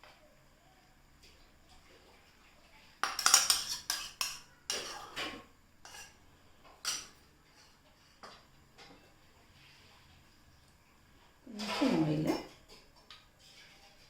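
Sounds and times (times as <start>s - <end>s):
utensil knocking and scraping cookware: 3.0s - 6.2s, 6.8s - 7.2s.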